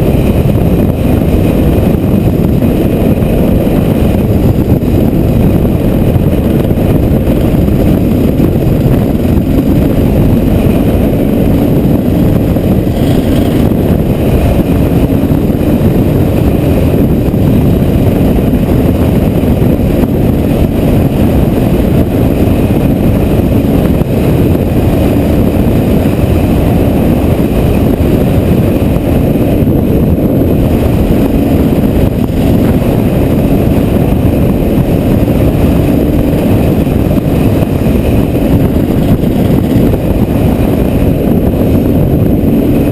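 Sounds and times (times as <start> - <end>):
strong wind buffeting microphone: 0.0 - 42.9.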